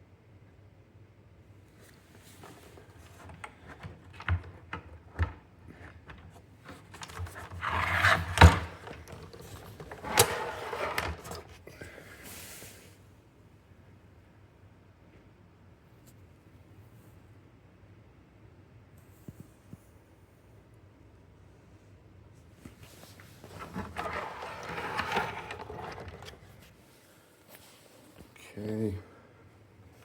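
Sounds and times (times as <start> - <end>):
rubbing or scraping: 2.4 - 11.6, 23.0 - 26.7.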